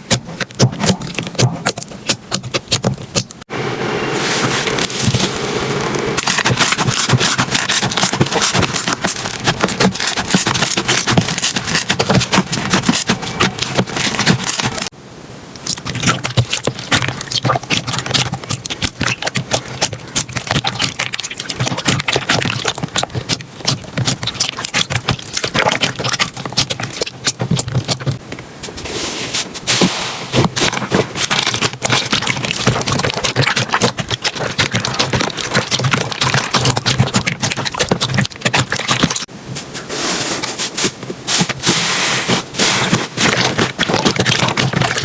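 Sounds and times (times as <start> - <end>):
slime crackling and popping: 6.2 - 14.9, 15.6 - 28.2, 29.7 - 39.3, 42.3 - 45.0.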